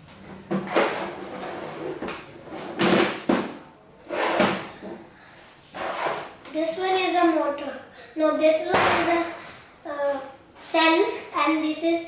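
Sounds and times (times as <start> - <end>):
objects clattering and scraping: 0.1 - 5.1, 5.7 - 6.4.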